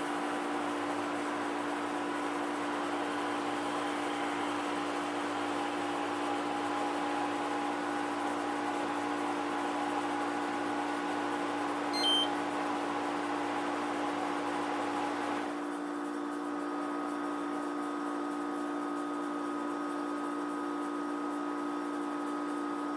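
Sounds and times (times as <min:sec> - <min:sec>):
short electronic beep: 0:12.0 - 0:12.3
air conditioner humming: 0:12.0 - 0:12.4.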